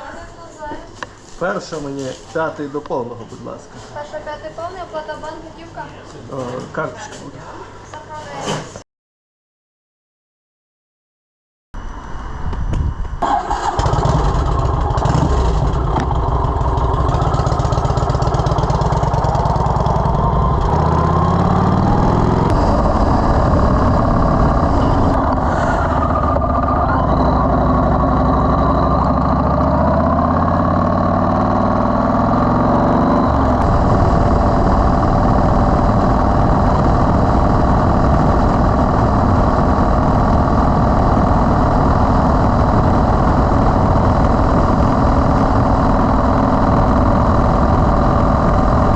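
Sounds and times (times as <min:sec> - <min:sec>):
motorcycle engine revving: 0:13.2 - 0:48.9.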